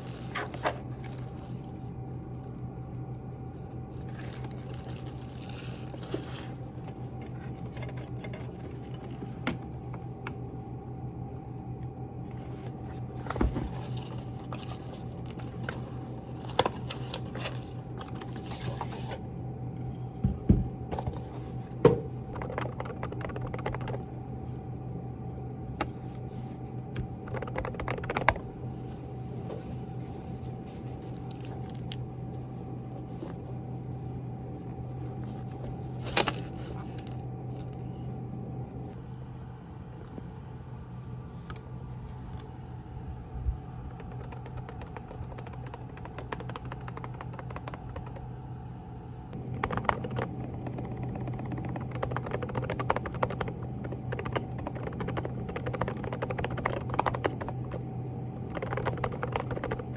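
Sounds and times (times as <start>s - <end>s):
steady low hum: 0.0s - 59.9s
muted keyboard keystrokes: 22.4s - 24.0s, 27.2s - 28.4s, 43.9s - 48.2s, 49.5s - 57.8s, 58.5s - 59.9s.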